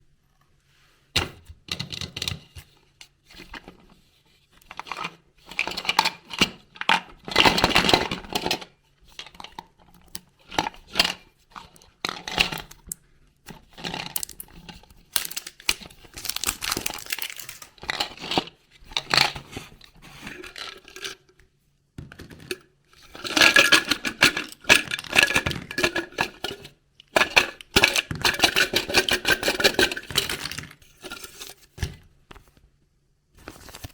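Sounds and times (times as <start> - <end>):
packaging tearing and rustling: 14.0 - 17.9.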